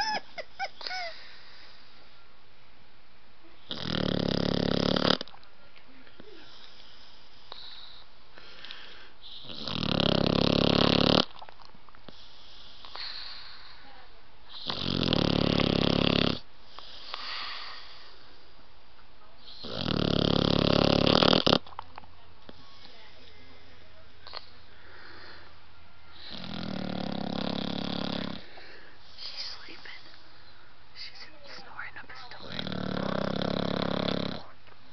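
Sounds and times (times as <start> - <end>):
soft breaths: 0.7 - 2.7, 5.4 - 9.6, 11.8 - 14.9, 16.4 - 20.0, 21.8 - 34.9
puppy snoring: 3.6 - 5.4, 6.4 - 8.1, 9.2 - 11.5, 14.5 - 18.3, 19.4 - 21.8, 26.1 - 29.4, 32.2 - 34.6.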